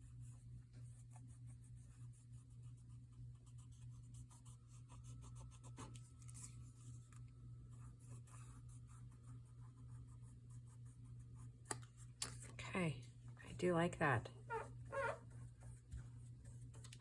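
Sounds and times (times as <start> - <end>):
rubbing and dabbing on paper: 0.0 - 7.0, 7.7 - 11.6
low electrical hum: 0.0 - 17.0.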